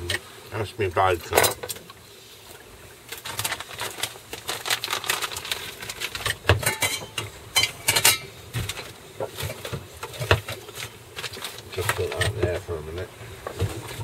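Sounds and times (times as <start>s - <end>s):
kitchen utensils clicking and tapping: 6.2s - 8.8s.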